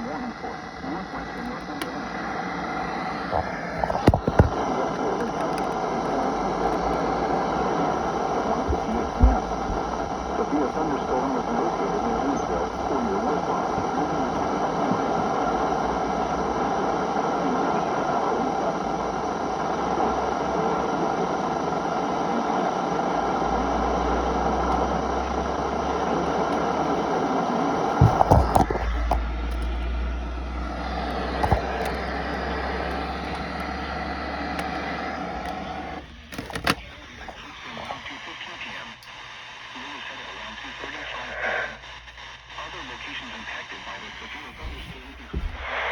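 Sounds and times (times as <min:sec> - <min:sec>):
muffled broadcast voice: 0:00.0 - 0:45.9.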